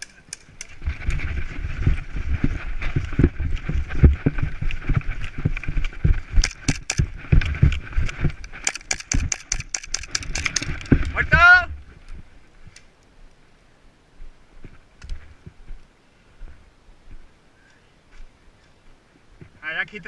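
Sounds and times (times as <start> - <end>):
running footsteps: 0.0 - 12.8, 18.1 - 18.4
airsoft guns firing: 8.6 - 10.7.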